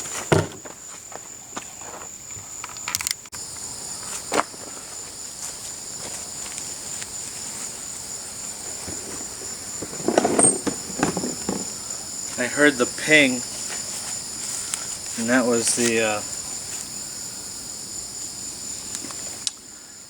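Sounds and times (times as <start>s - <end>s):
insects chirping: 0.0s - 20.0s
loud clattering: 8.7s - 11.8s.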